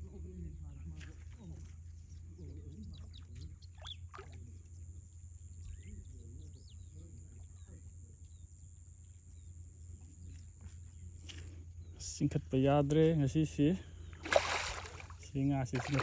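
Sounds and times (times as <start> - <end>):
steady low hum: 0.0 - 16.0
faint distant voices: 14.2 - 16.0.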